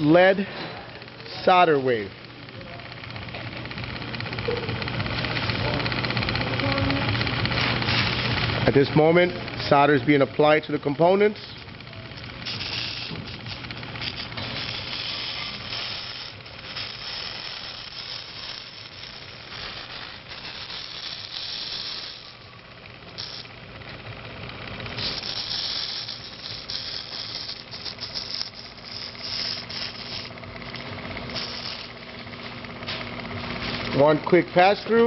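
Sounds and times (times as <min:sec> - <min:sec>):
steady low hum: 0:00.0 - 0:35.0
solder wave hissing and crackling: 0:06.6 - 0:23.6, 0:24.8 - 0:34.0.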